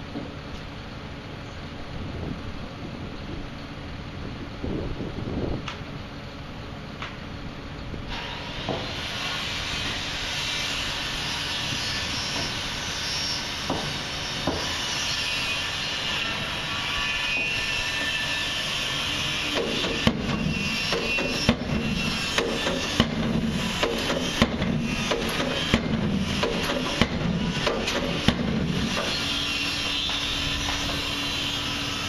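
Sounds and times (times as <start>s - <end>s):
machine running steadily: 0.0s - 32.0s
pile driver hammer blows: 8.1s - 32.0s.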